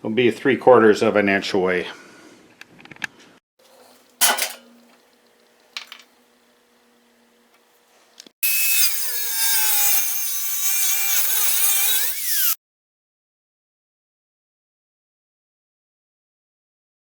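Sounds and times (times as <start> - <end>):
metal clanks: 3.6 - 5.0
angle grinder cutting steel: 8.4 - 12.6.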